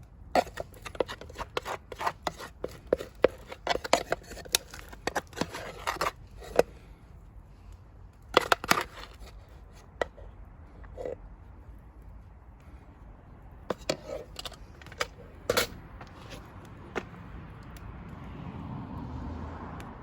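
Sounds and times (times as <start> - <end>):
clinks and scrapes on a metal mess tin: 0.3 - 6.9, 8.2 - 11.3, 13.7 - 17.1.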